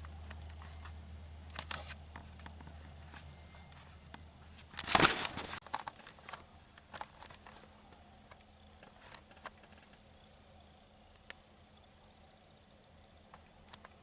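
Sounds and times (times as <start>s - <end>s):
small clicks: 11.0s - 11.5s, 13.2s - 14.0s.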